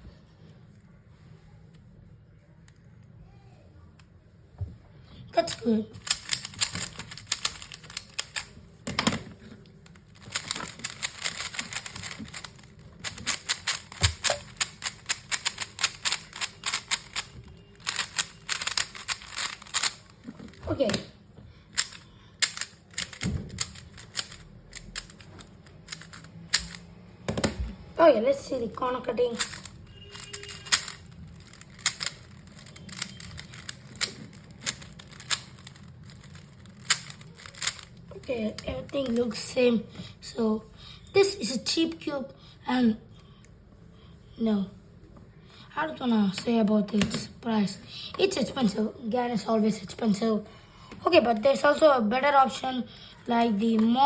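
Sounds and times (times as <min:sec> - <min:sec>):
puzzle cube clicking turns: 0:05.4 - 0:27.6, 0:28.7 - 0:39.6.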